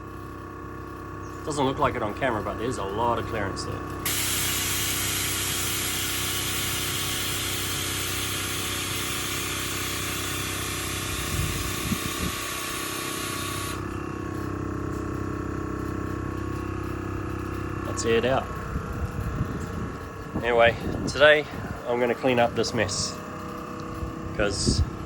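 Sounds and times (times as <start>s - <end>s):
air compressor humming: 0.0s - 25.0s
loud hiss of rushing air: 4.1s - 13.8s.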